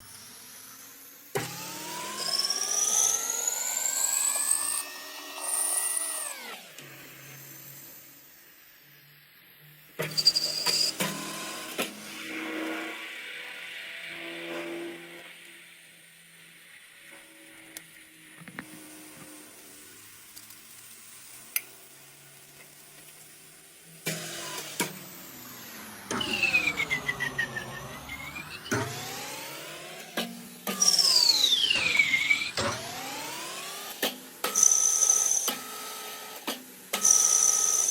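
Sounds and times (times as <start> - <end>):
lathe whine rising in pitch: 0.0 - 8.2, 10.1 - 15.8, 24.0 - 37.9.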